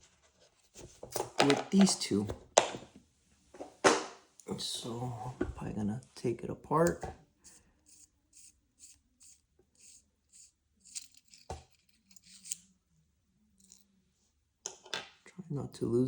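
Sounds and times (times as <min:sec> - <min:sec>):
pen threads rasping: 0:07.4 - 0:12.7
metal scraping: 0:07.5 - 0:12.6.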